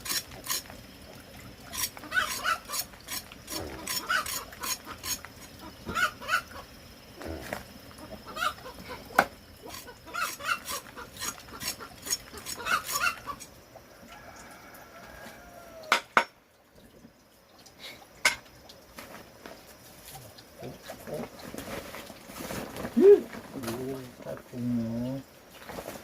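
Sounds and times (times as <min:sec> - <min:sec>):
chickens clucking and squawking: 0:01.7 - 0:16.0.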